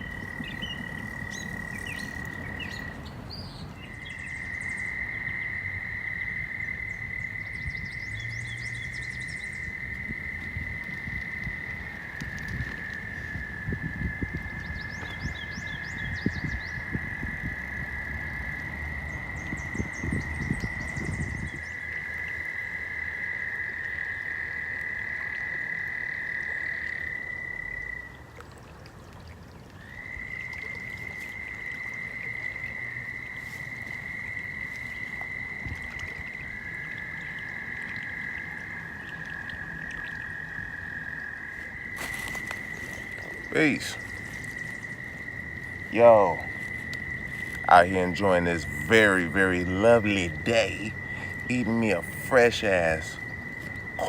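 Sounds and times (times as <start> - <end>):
low rumbling noise: 0.0 - 4.8
high-pitched animal chorus: 0.0 - 4.9.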